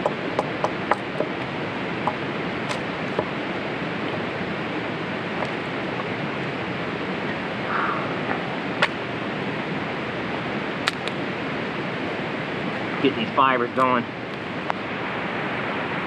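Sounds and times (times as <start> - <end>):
rain: 0.0 - 16.0
wind: 0.0 - 16.0
sharp clicks: 10.8 - 11.2.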